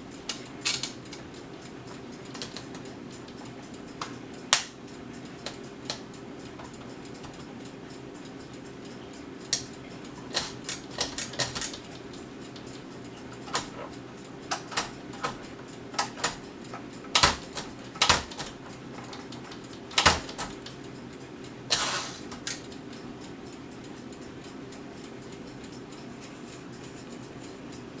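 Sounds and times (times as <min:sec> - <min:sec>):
typewriter key strikes and clacks: 0:00.6 - 0:01.0, 0:02.3 - 0:02.7, 0:10.3 - 0:12.0, 0:13.4 - 0:13.8, 0:14.5 - 0:16.4, 0:17.1 - 0:20.7, 0:21.7 - 0:22.6.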